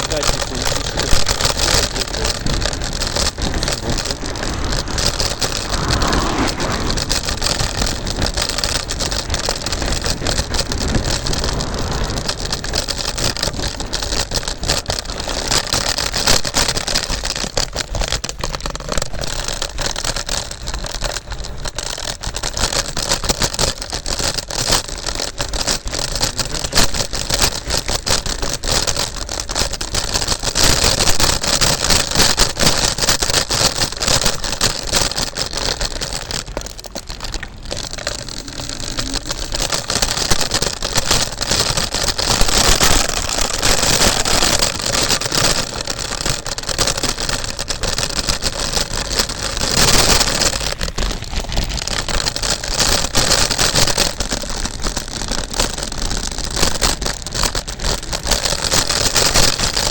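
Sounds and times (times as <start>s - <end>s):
electric scooter road rumble: 0.0s - 59.9s
wind rushing: 1.7s - 14.2s, 38.1s - 46.0s.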